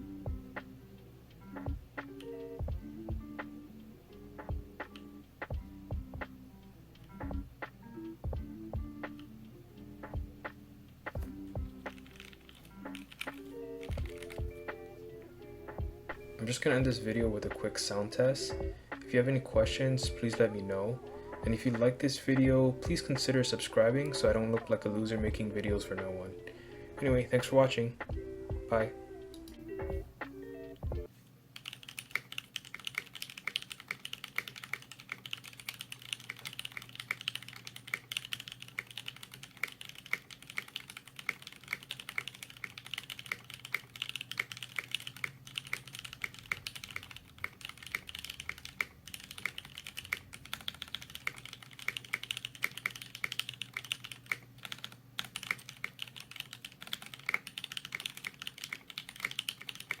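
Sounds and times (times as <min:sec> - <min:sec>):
mechanical keyboard typing: 0:11.9 - 0:14.6, 0:31.6 - 1:00.0.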